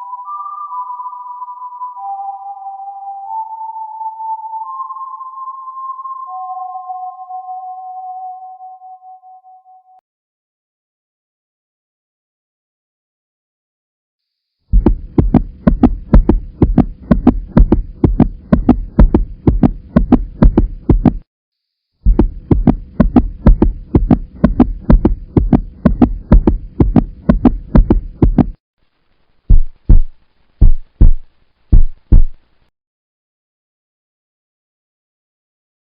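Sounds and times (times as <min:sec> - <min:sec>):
pounding heartbeat: 0:14.7 - 0:21.2, 0:22.0 - 0:28.6, 0:29.5 - 0:32.4.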